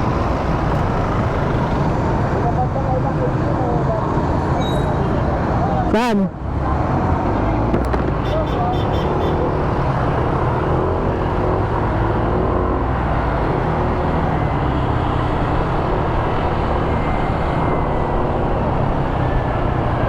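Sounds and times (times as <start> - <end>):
road noise: 0.0 - 20.0
motor scooter running: 0.1 - 2.4.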